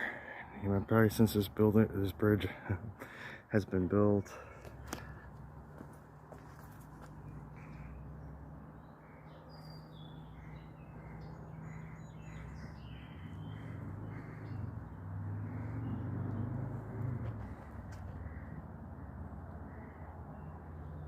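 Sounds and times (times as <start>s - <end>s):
birds calling: 0.0s - 21.0s.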